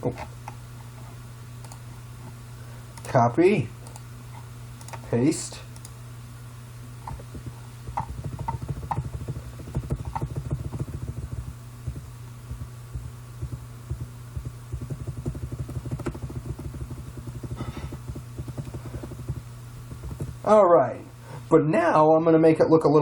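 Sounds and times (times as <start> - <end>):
low electrical hum: 0.0 - 23.0
keyboard and mouse clicks: 1.6 - 1.8, 3.8 - 4.0, 4.8 - 5.0, 7.1 - 20.4.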